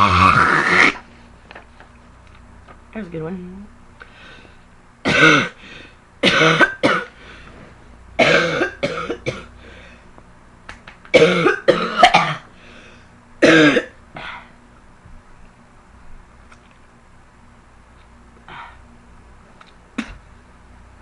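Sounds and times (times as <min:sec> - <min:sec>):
girl coughing: 0:05.0 - 0:05.6, 0:06.2 - 0:07.2, 0:08.2 - 0:09.5, 0:11.1 - 0:12.5, 0:13.4 - 0:14.0.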